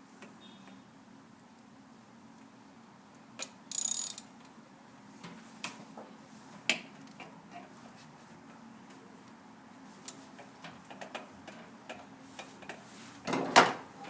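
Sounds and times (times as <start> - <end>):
ratchet wrench clicking: 3.4 - 4.3.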